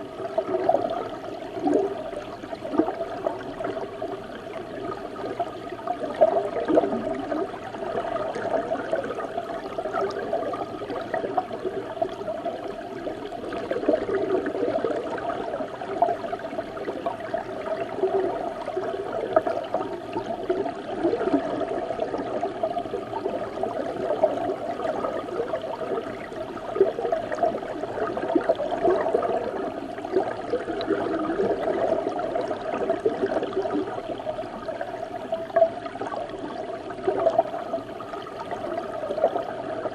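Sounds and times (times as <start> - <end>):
underwater river rush: 0.0 - 39.9.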